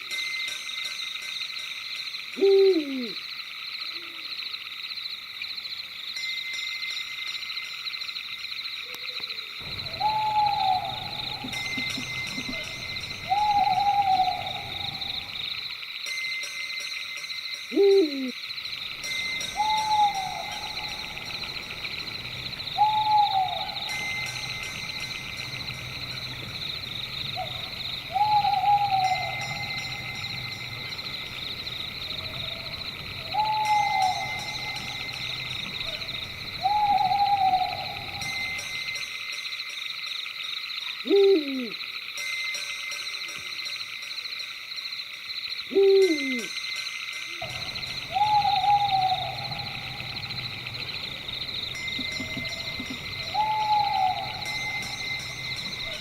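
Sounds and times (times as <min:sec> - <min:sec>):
pulsing insect chorus: 0:00.0 - 0:56.0
owl hooting: 0:02.4 - 0:03.2, 0:09.0 - 0:15.5, 0:17.7 - 0:18.4, 0:19.2 - 0:38.6, 0:41.0 - 0:41.8, 0:45.7 - 0:46.5, 0:47.4 - 0:56.0.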